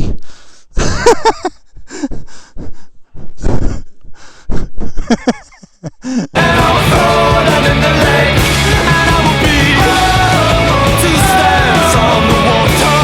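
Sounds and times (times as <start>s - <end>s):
man breathing hard and gasping: 0.0s - 0.9s, 1.5s - 5.1s, 5.9s - 6.4s.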